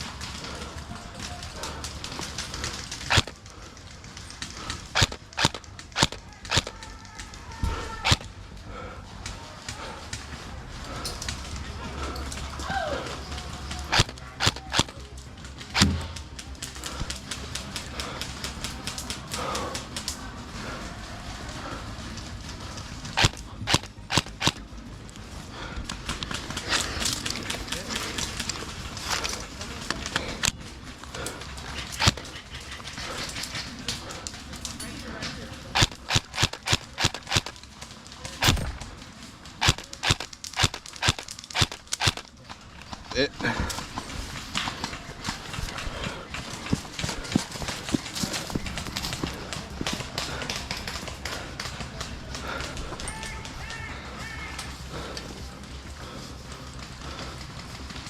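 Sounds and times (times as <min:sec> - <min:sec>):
sharp close footsteps: 0:00.0 - 0:58.0
airsoft gunshots: 0:02.9 - 0:03.4, 0:04.9 - 0:06.8, 0:07.9 - 0:08.3, 0:13.9 - 0:15.0, 0:15.7 - 0:16.2, 0:23.2 - 0:24.6, 0:35.8 - 0:37.6, 0:39.6 - 0:42.3.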